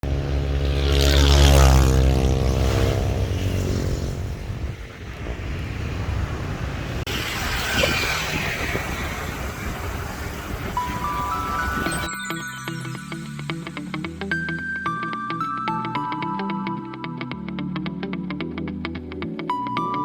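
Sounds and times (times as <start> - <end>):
engine passing by: 0.0 - 12.1
steady rushing noise: 2.4 - 12.1.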